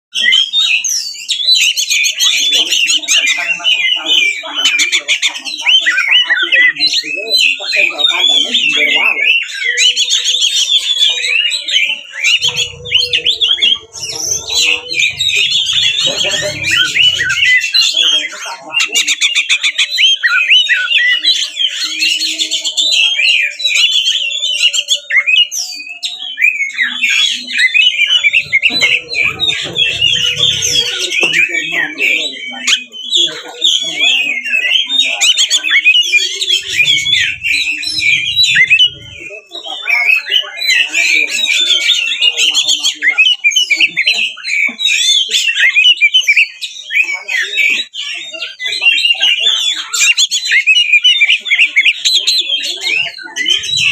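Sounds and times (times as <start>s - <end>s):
bird singing whistled phrases: 0.1s - 53.9s.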